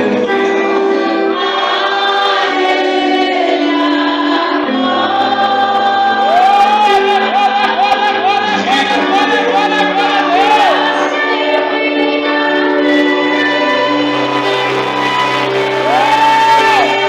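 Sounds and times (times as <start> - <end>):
held chords: 0.0 - 17.0
voices singing gospel song: 0.0 - 17.0.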